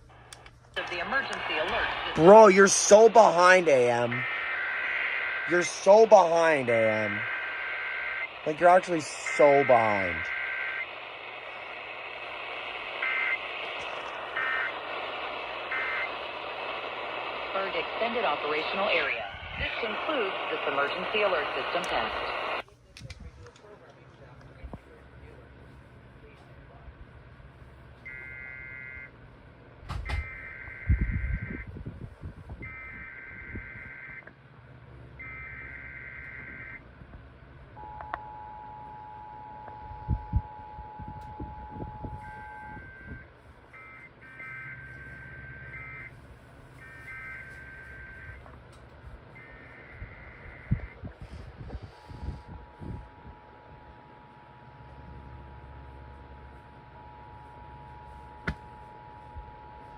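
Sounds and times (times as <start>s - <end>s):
radio hiss: 0.0s - 22.7s, 28.0s - 29.1s, 30.1s - 31.7s, 41.3s - 59.9s
buzzy digital tone bursts: 1.1s - 14.7s
two-tone attention signal: 37.8s - 43.2s.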